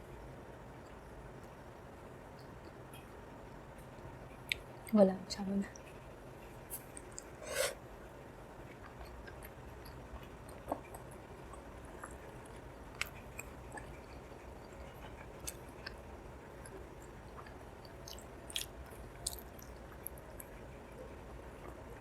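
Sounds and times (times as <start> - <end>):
wet chewing with mouth smacks: 16.6 - 20.5.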